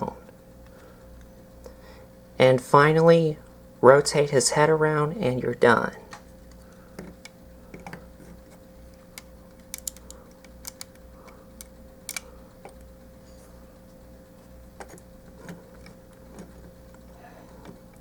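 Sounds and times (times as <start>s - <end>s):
faint hum: 0.0s - 18.0s
plastic toy clicks and taps: 9.6s - 11.0s.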